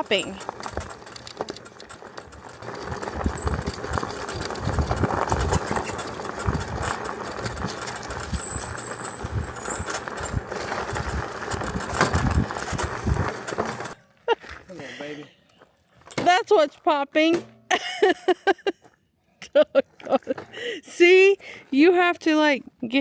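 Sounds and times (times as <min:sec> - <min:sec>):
thin high squeals: 0:00.0 - 0:02.0, 0:04.7 - 0:11.2
bike tyre noise and jolting knocks: 0:00.0 - 0:14.0.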